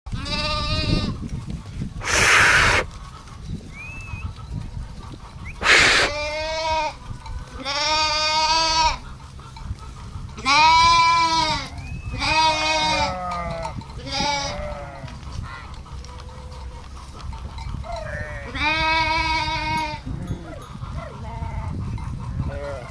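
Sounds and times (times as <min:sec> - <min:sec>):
sheep bleating: 0:00.1 - 0:01.1, 0:07.6 - 0:09.1, 0:10.4 - 0:15.1.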